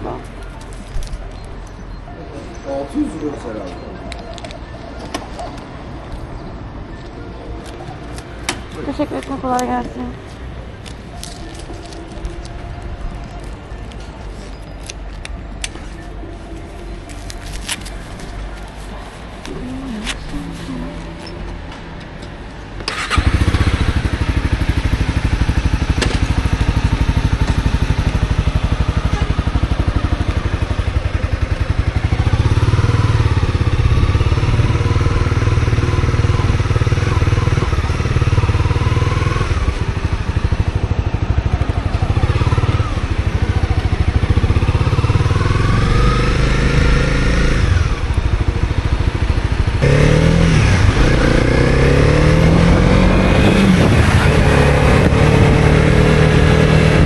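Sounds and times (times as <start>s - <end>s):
motorcycle engine starting and riding: 22.2s - 57.0s.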